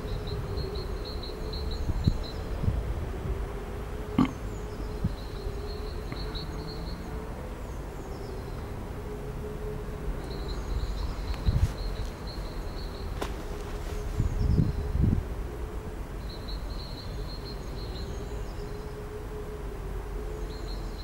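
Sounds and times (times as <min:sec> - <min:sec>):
distant siren: 0:00.0 - 0:04.2, 0:04.8 - 0:13.1, 0:16.4 - 0:21.0
birds chirping: 0:04.1 - 0:08.8, 0:10.2 - 0:15.2.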